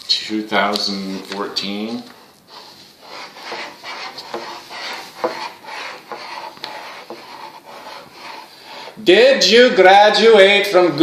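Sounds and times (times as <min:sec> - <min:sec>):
pen scratching on paper: 0:02.5 - 0:09.0.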